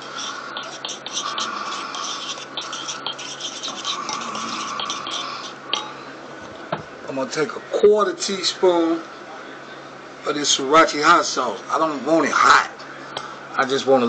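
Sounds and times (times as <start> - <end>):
spoon scraping in container: 0.0 - 5.9.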